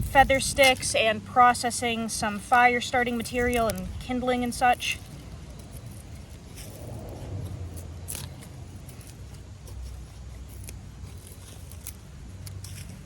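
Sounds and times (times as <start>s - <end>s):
low background rumble: 0.0s - 13.0s
knife cracking and scraping wood: 5.2s - 13.0s.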